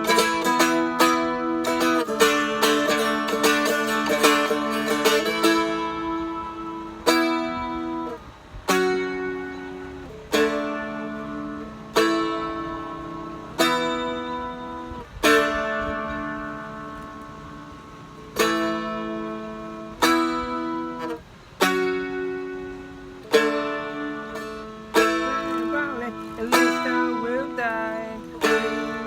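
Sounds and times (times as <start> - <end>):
stick dulcimer strummed: 0.0 - 29.0.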